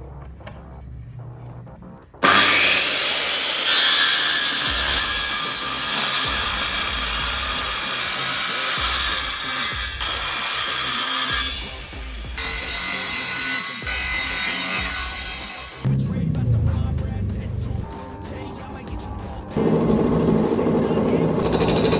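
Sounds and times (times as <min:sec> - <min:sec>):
power tool cutting wood: 0:02.2 - 0:15.9, 0:19.6 - 0:21.9.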